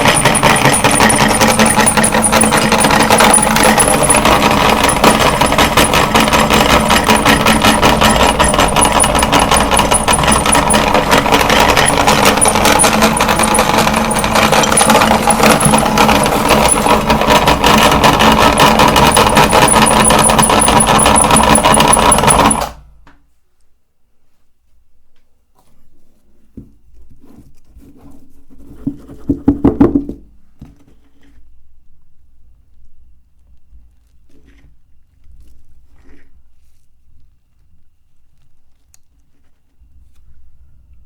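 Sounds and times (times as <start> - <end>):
electric meat grinder grinding: 0.0 - 22.6.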